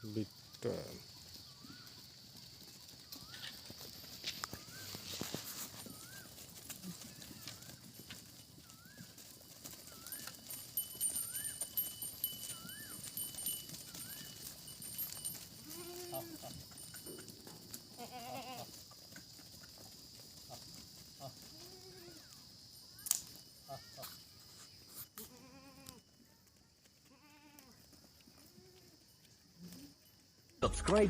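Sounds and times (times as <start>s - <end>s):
goats bleating: 15.6s - 16.6s, 17.9s - 18.8s, 25.2s - 26.0s, 27.1s - 27.8s.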